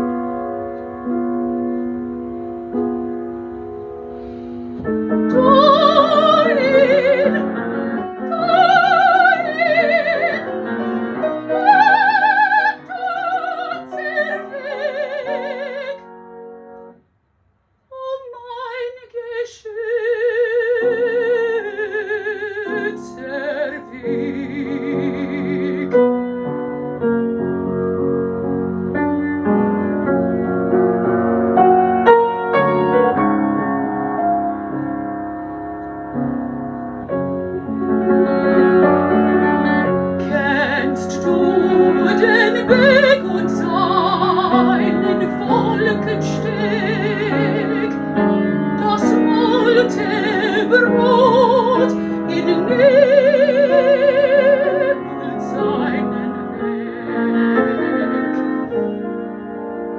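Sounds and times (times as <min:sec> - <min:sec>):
piano accompaniment: 0:00.0 - 0:17.0, 0:18.1 - 0:59.9
soprano singing with vibrato: 0:05.2 - 0:10.6, 0:11.4 - 0:16.1, 0:17.9 - 0:26.1, 0:40.2 - 0:48.1, 0:48.8 - 0:59.0.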